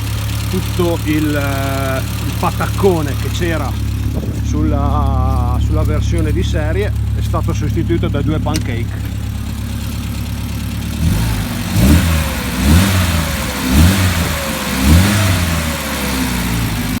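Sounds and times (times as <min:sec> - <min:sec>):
car engine idling and revving: 0:00.0 - 0:17.0.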